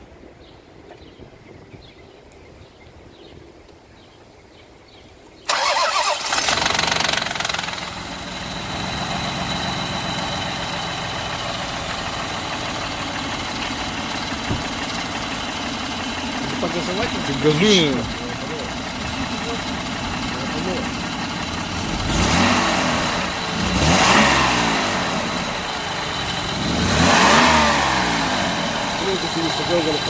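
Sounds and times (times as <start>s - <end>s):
car engine idling: 5.5s - 30.0s
car engine starting with knock: 11.1s - 30.0s.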